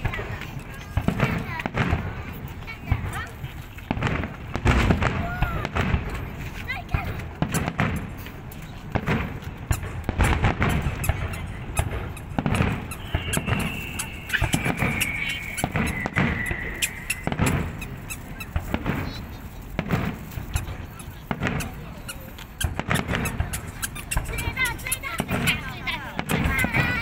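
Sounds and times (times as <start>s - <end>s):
fireworks bangs and crackles: 0.0s - 27.0s
firework whistle falling in pitch: 12.7s - 18.1s.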